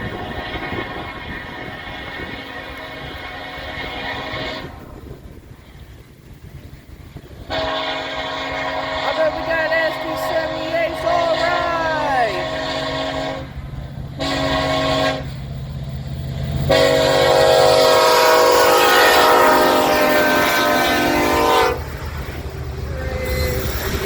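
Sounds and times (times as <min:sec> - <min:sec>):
low rumble of diesel engines: 0:00.0 - 0:24.0
locomotive horn blasts: 0:01.7 - 0:05.0, 0:07.4 - 0:13.6, 0:14.2 - 0:15.4, 0:16.7 - 0:21.8.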